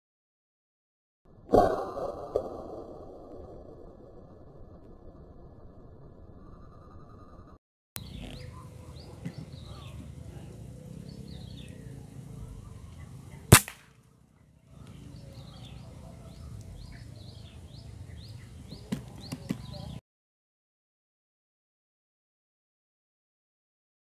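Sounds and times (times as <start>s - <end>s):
birds chirping: 6.4s - 13.6s, 14.4s - 20.0s
air rifle shot: 13.5s - 13.9s.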